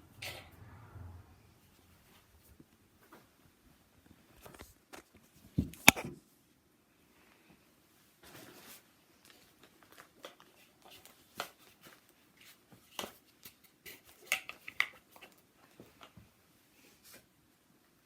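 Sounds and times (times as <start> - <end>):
objects and fabric handled: 4.2 - 6.2.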